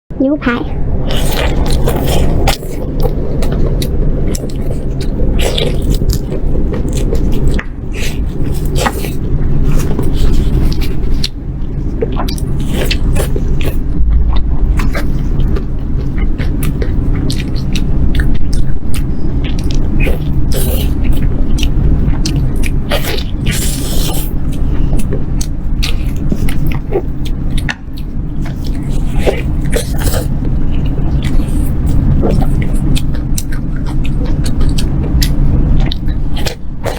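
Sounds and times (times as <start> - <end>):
low hum: 0.1 - 36.9
steady low rumble: 0.1 - 36.9
crackly bites and chewing of meat: 0.9 - 36.9.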